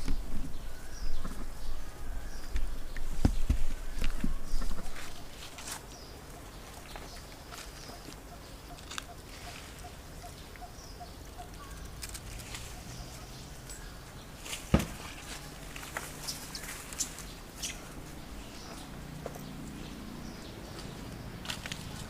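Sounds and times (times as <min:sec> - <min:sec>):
faint animal calls: 0:06.2 - 0:14.0.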